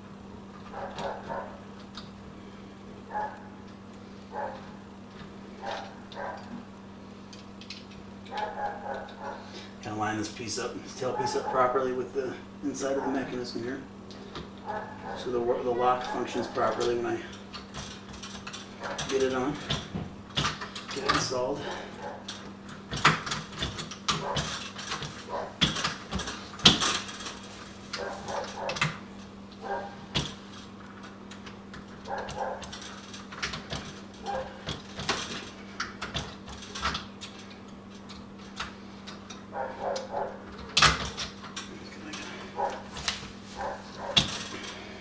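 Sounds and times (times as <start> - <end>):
faint steady hum: 0.0 - 45.0
lock parts clicking and clattering: 15.8 - 42.7.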